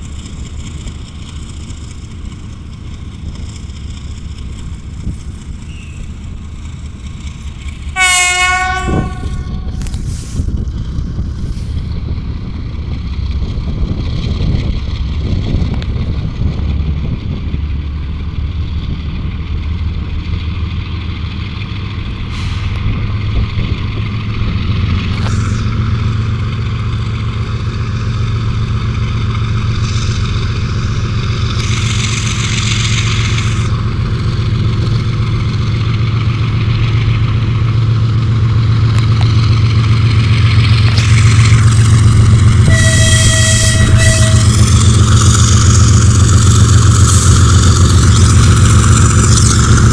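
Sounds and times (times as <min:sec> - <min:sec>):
diesel locomotive engine running: 0:00.0 - 0:49.9
hiss: 0:09.8 - 0:10.6.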